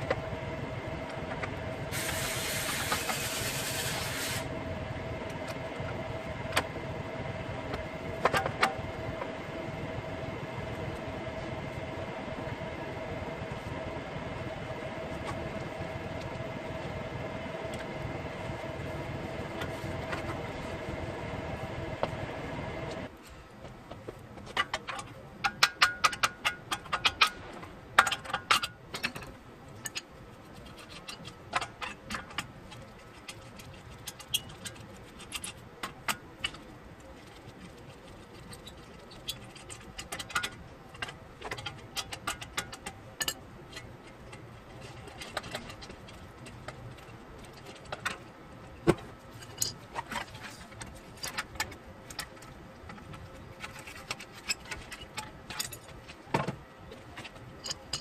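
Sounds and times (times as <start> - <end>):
metal tools clinking and rattling: 49.3 - 51.4, 57.2 - 58.0.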